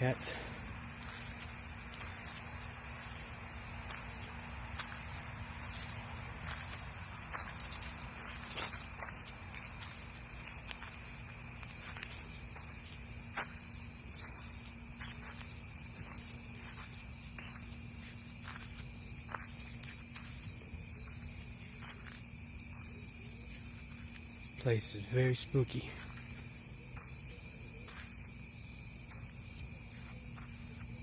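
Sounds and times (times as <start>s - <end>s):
night insects trilling: 0.0s - 31.0s
soft footsteps: 0.1s - 24.6s, 25.6s - 31.0s.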